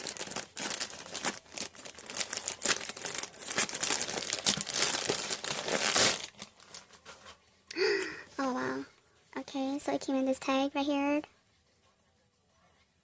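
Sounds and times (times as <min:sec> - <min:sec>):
package ripping: 0:00.0 - 0:06.9
packaging crackling and rustling: 0:00.0 - 0:07.4.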